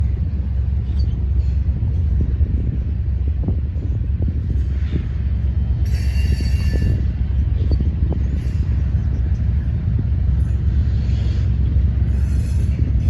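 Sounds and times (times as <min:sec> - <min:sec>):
vehicle low rumble: 0:00.0 - 0:13.0.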